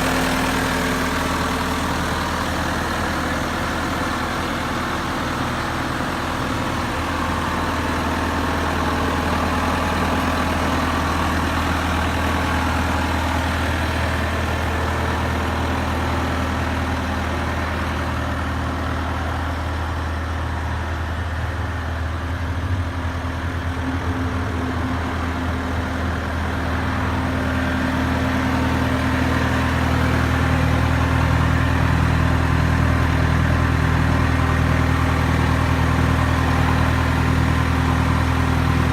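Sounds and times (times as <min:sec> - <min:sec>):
diesel engine idling: 0:00.0 - 0:38.9.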